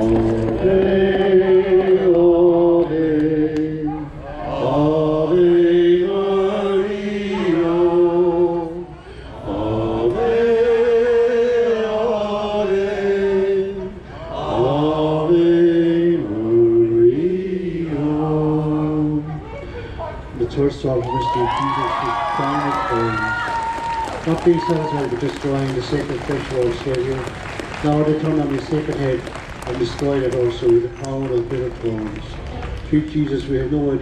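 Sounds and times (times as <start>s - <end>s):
men singing a hymn in unison: 0.0s - 19.3s.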